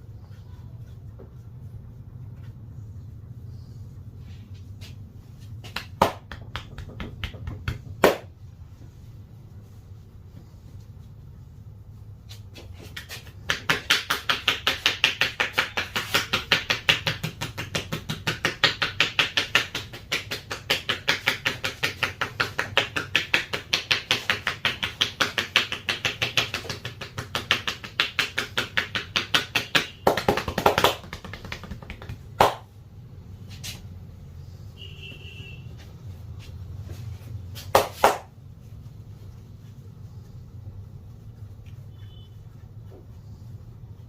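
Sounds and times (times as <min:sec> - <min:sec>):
hands slapping in percussive massage: 0:04.6 - 0:08.6, 0:12.2 - 0:33.8, 0:36.3 - 0:40.4.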